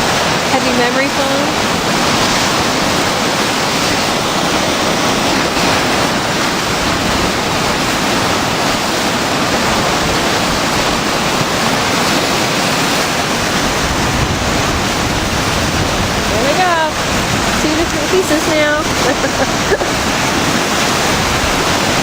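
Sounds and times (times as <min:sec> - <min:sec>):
river rushing: 0:00.0 - 0:22.0.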